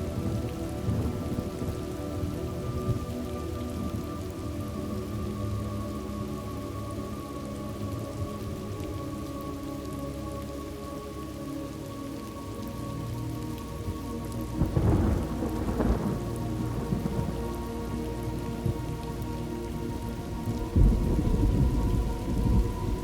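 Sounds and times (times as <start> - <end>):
steady rain: 0.0 - 23.0
thunder rolling: 14.6 - 17.3, 20.5 - 23.0.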